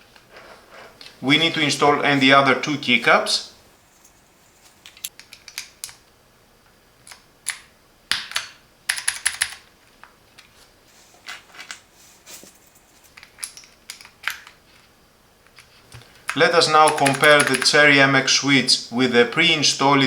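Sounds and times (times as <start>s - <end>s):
mechanical keyboard clicks: 16.3s - 17.8s.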